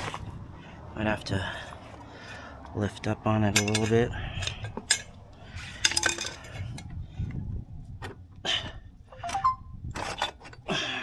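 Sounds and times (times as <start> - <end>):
metal clinking and scraping: 3.5 - 6.9, 9.2 - 10.8.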